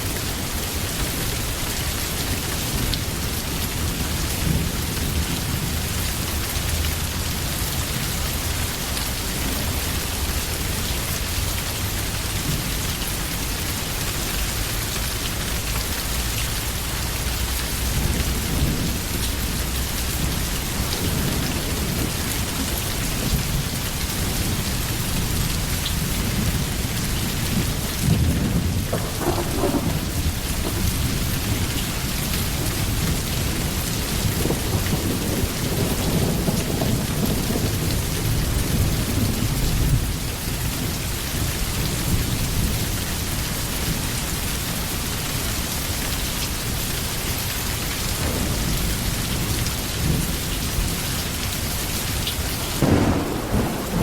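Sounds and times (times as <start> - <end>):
heavy rain falling: 0.0 - 54.0
thunder rumbling: 17.2 - 40.4, 48.1 - 54.0.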